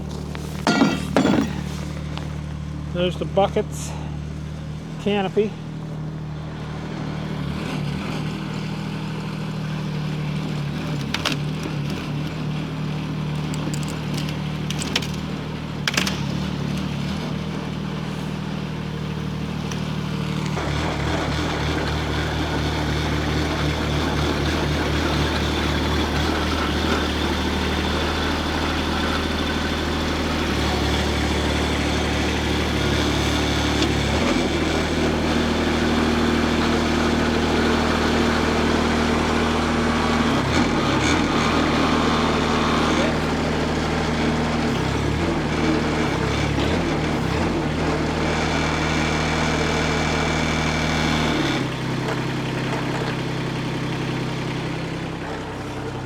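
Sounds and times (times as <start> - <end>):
diesel excavator engine running: 0.0 - 56.0
sharp knocks: 0.6 - 2.0.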